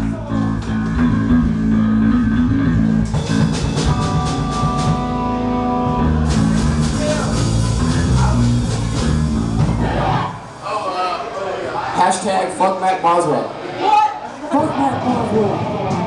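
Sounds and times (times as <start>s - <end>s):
droning electric guitar and bass: 0.0s - 10.3s
drums and cymbal crashes: 3.0s - 5.4s, 6.0s - 10.6s.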